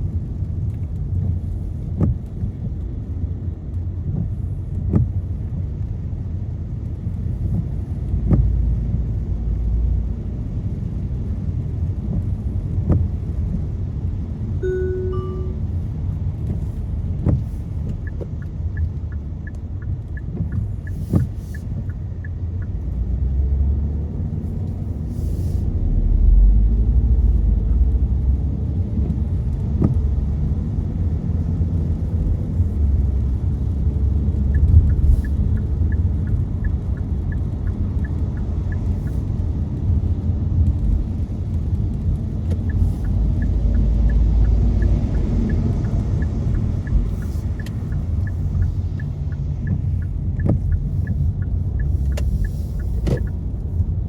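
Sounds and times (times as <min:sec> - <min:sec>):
tyres and engine rumble: 0:00.0 - 0:54.0
fast regular ticking: 0:42.7 - 0:53.4.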